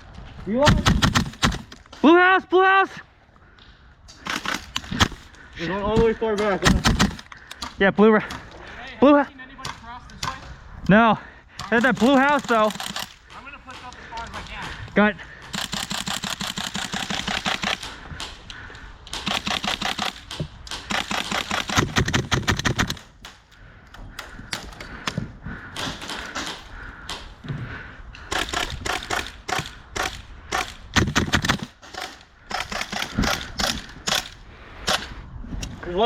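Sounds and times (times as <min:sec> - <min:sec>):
airsoft guns firing in bursts: 0:00.6 - 0:01.9, 0:04.2 - 0:05.3, 0:06.3 - 0:07.7, 0:11.6 - 0:14.8, 0:15.4 - 0:18.5, 0:19.1 - 0:23.5, 0:25.7 - 0:27.3, 0:28.3 - 0:35.1.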